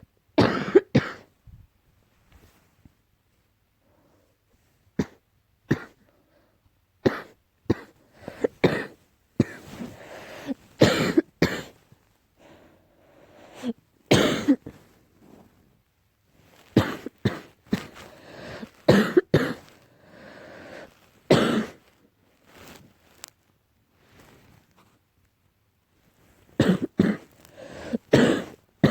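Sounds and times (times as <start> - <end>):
person coughing: 0.4 - 1.3, 5.0 - 6.0, 7.1 - 9.8, 10.4 - 11.8, 13.6 - 14.8, 16.8 - 19.7, 21.3 - 21.8, 26.6 - 28.9.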